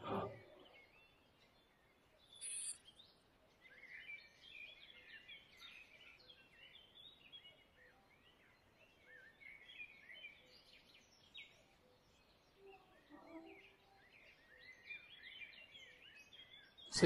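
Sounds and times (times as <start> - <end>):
faint birds chirping: 0.0 - 17.0.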